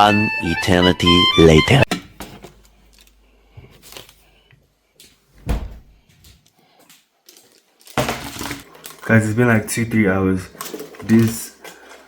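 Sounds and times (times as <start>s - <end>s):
loud thud: 5.4s - 6.0s.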